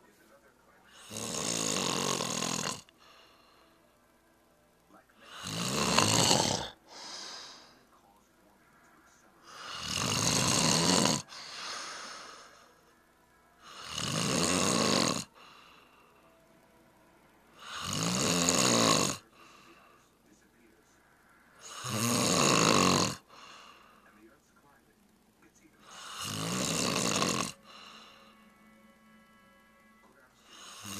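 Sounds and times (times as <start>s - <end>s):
person snoring: 0.9s - 3.8s, 5.2s - 7.9s, 9.4s - 12.9s, 13.6s - 16.3s, 17.6s - 20.1s, 21.6s - 24.2s, 25.8s - 28.6s, 30.4s - 30.9s.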